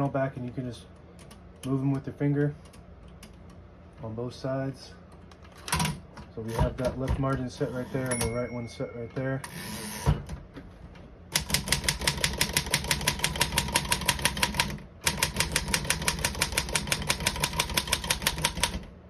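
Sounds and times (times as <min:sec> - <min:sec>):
manual typewriter typing: 0:11.3 - 0:18.9.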